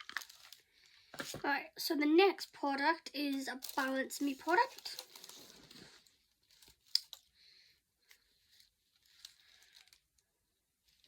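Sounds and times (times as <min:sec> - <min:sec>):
packaging rustling and crinkling: 0:00.0 - 0:01.4, 0:03.6 - 0:07.3, 0:08.1 - 0:10.2.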